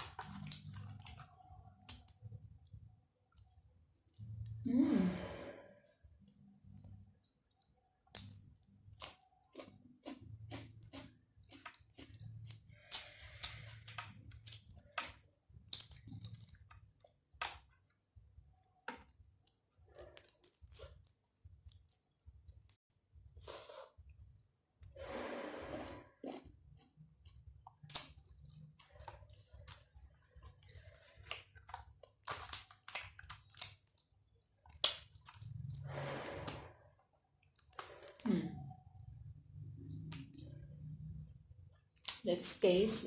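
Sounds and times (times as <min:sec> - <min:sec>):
chewing with wet mouth clicks: 0:06.8 - 0:17.8.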